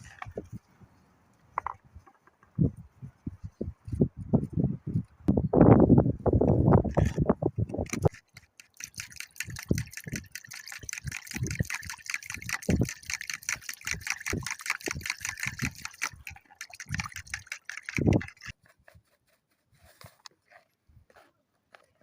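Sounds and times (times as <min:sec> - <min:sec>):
wet clicking and splashing water: 0:07.7 - 0:18.6.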